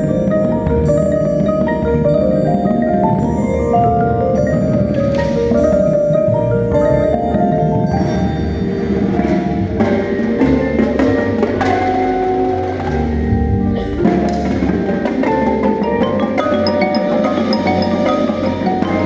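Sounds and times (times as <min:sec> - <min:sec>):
glockenspiel pings: 0:00.0 - 0:09.6, 0:15.6 - 0:19.0
percussion ensemble playing: 0:00.0 - 0:19.0
xylophone notes: 0:00.0 - 0:19.0.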